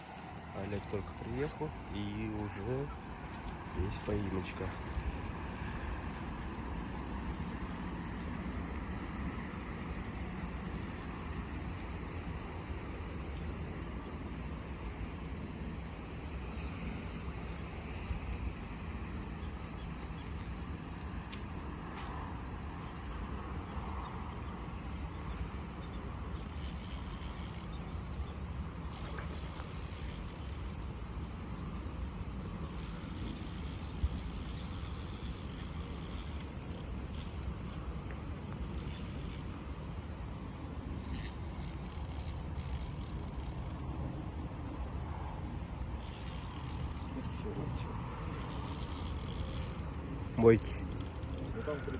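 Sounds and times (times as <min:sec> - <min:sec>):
fishing reel cranking: 0:01.1 - 0:08.6, 0:10.3 - 0:11.2, 0:25.8 - 0:27.8, 0:28.9 - 0:30.9, 0:32.6 - 0:37.8, 0:38.5 - 0:39.6, 0:40.9 - 0:43.9, 0:46.0 - 0:47.7, 0:48.3 - 0:51.9.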